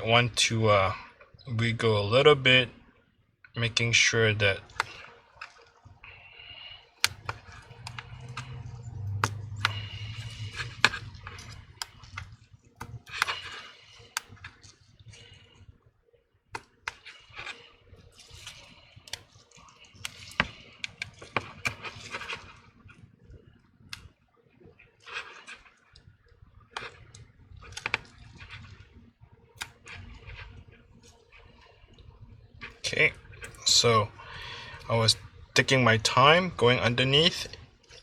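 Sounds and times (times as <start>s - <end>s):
low hum: 6.0s - 14.6s.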